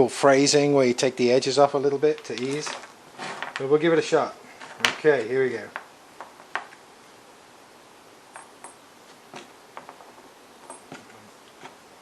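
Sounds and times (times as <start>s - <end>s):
small metal hardware clinking: 10.7s - 11.0s.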